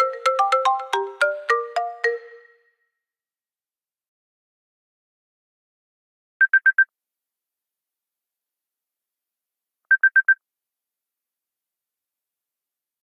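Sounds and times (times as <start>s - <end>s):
electronic ringtone beeps: 0.0s - 2.7s, 6.4s - 6.9s, 9.9s - 10.4s.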